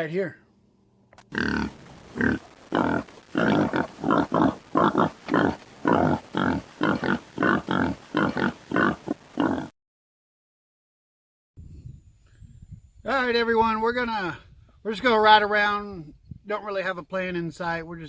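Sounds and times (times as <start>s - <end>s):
hog grunting: 1.3s - 9.7s.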